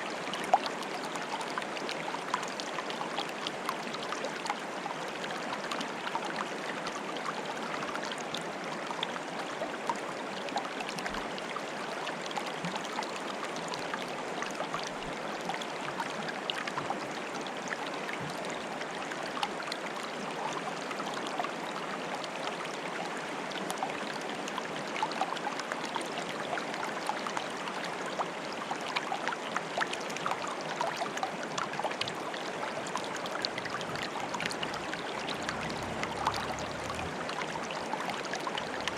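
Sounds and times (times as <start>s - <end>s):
small water splashes: 29.2s - 38.9s
running water bubbling: 30.5s - 38.9s.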